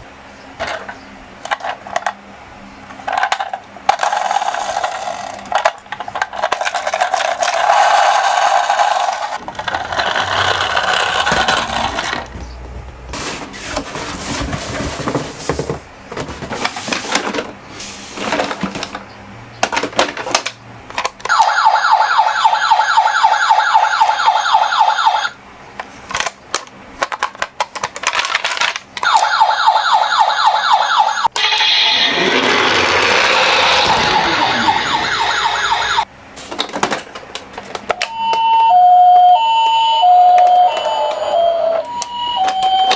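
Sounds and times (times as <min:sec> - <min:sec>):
toy cars rattling down a slope: 0:03.2 - 0:12.3, 0:31.9 - 0:36.0
toy ambulance electronic siren: 0:21.3 - 0:25.4, 0:29.0 - 0:36.1, 0:38.0 - 0:42.9.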